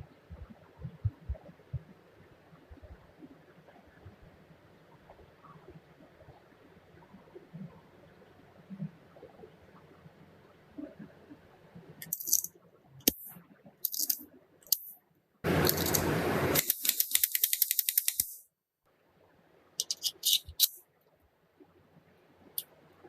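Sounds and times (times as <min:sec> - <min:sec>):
pistol clicks and rattles: 0:12.0 - 0:13.2, 0:13.8 - 0:14.9, 0:15.6 - 0:18.4, 0:19.8 - 0:20.8.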